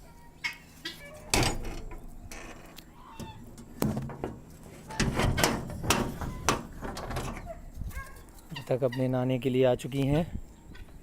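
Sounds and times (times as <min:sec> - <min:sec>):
chickens clucking: 0:00.0 - 0:11.0
sharp knocks and rattles: 0:01.3 - 0:07.6.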